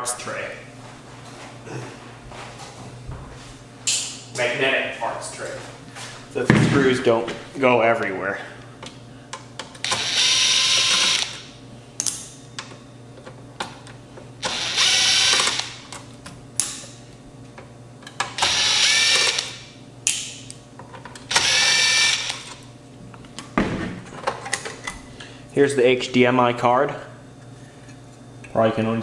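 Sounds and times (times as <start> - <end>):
impact driver spinning: 14.4 - 15.8, 18.4 - 19.6, 21.3 - 22.5.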